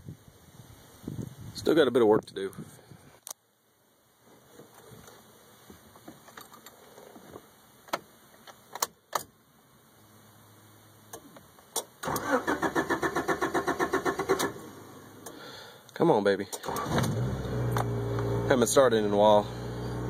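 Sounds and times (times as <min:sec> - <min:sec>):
starter motor cranking engine: 0:12.0 - 0:14.6, 0:16.5 - 0:20.0.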